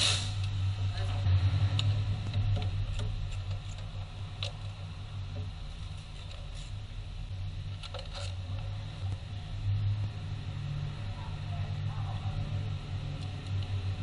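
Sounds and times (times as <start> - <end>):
car engine humming: 0.0 - 14.0.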